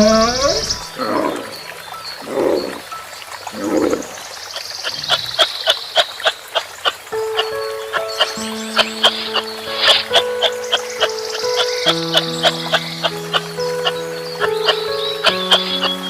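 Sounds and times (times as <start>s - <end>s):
clicking animal calls: 3.5s - 16.0s.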